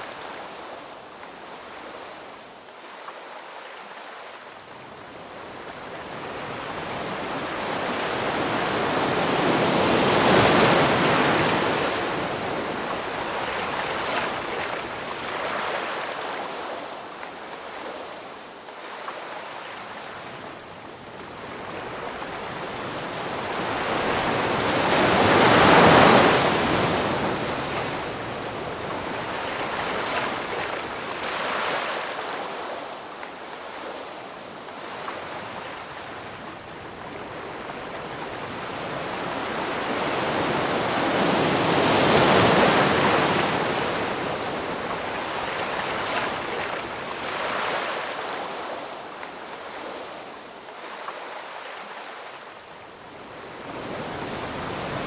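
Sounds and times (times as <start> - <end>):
ocean waves breaking: 5.4 - 16.9, 21.2 - 52.4.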